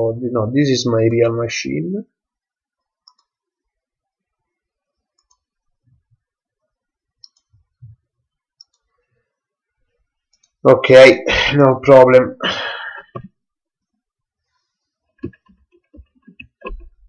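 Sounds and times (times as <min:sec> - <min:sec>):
faint mouse clicks: 0:02.8 - 0:03.4, 0:05.1 - 0:05.6, 0:07.2 - 0:07.6, 0:08.6 - 0:08.9.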